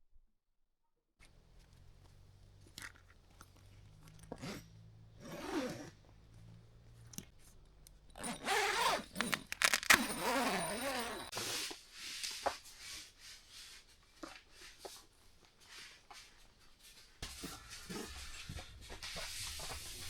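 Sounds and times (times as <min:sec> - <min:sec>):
material rustling and crinkling: 0:01.2 - 0:17.2.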